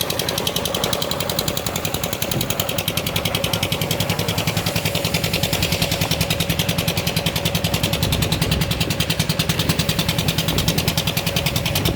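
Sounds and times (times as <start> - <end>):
concrete mixer engine chugging: 0.0 - 11.9.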